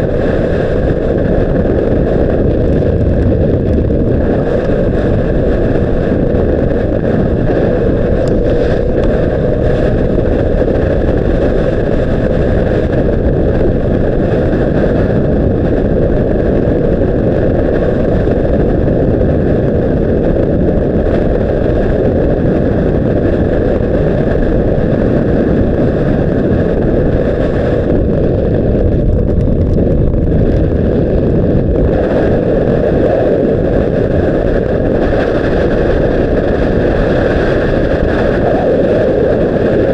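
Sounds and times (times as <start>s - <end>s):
motorcycle engine drone: 0.0s - 14.7s
wind buffeting microphone: 0.0s - 39.9s.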